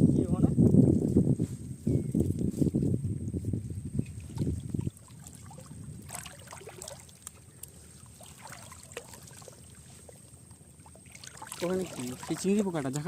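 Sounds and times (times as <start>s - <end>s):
water sloshing and trickling: 3.4s - 13.0s.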